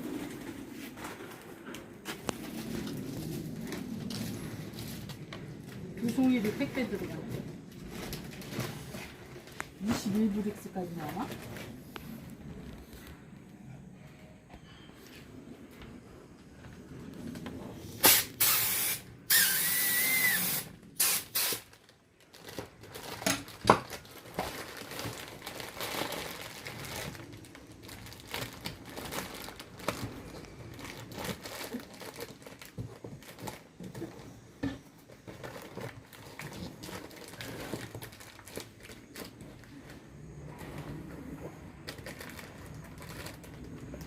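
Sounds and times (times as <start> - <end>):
rustling of handling: 0.0 - 17.6, 21.7 - 44.0
rushing air hiss: 17.8 - 21.7.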